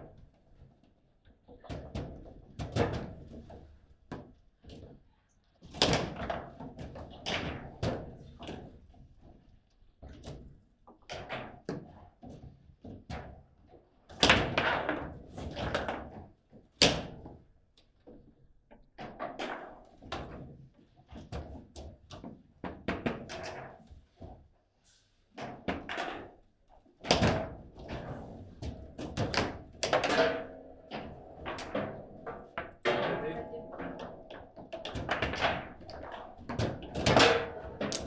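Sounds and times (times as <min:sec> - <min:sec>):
table football rods banging: 0:29.1 - 0:38.0.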